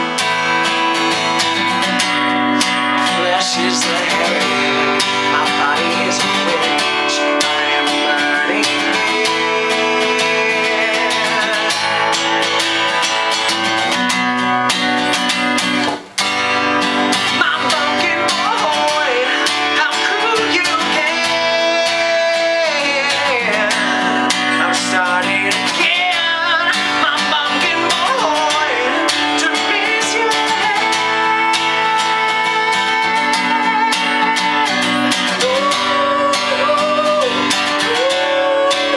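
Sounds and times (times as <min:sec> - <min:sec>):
acoustic guitar strumming: 0:00.0 - 0:38.9.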